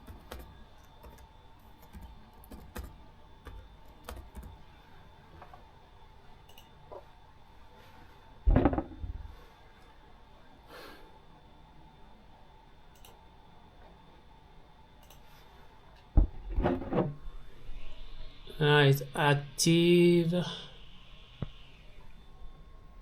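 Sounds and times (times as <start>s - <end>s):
dull thumps: 8.5s - 9.2s.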